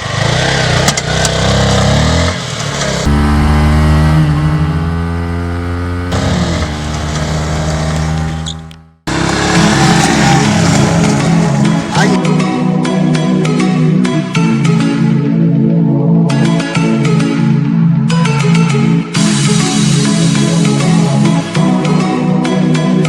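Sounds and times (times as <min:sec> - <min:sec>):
motorcycle engine revving: 0:00.0 - 0:12.2.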